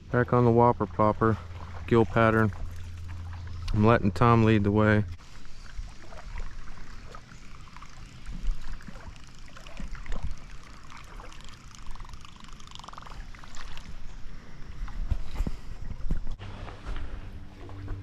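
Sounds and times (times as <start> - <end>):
creek water sloshing and trickling: 0.0 - 18.0.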